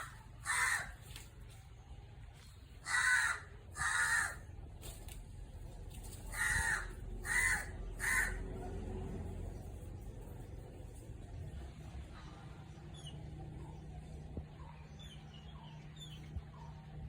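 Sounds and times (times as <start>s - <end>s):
crow cawing: 0.0s - 1.1s, 2.8s - 4.5s, 6.3s - 8.4s.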